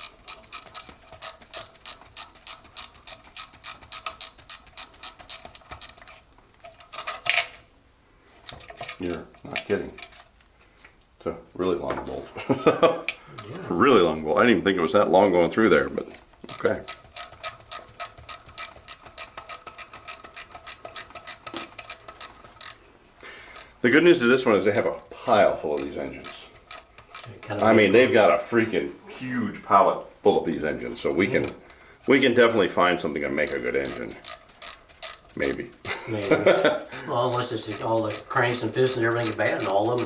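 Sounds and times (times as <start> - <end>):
ratchet wrench clicking: 0.0 - 6.1, 16.4 - 22.8, 23.5 - 27.8, 33.4 - 40.0
hand tool scraping metal: 33.4 - 40.0.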